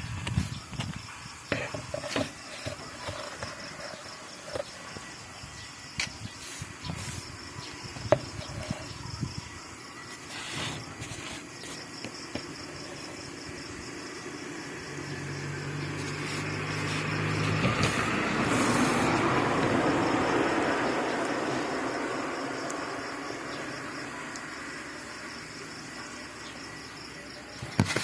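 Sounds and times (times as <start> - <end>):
passing vehicle engine hum: 14.2 - 26.4.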